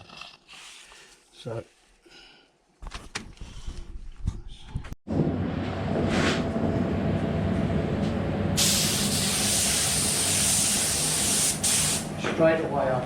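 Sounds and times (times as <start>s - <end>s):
spray gun air hiss: 8.6s - 12.1s.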